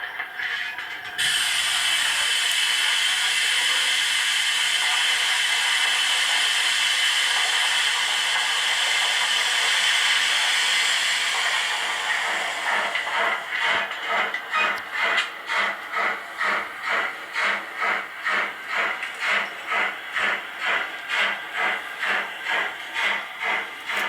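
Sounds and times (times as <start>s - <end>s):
model locomotive steam hiss: 1.2s - 13.9s
rhythmic exhaust chuffs: 1.2s - 24.0s.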